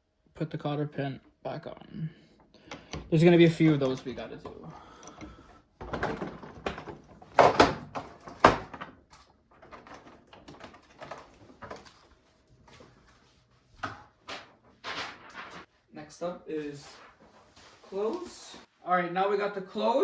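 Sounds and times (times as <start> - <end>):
plastic parts clicking and knocking: 2.6 - 12.2.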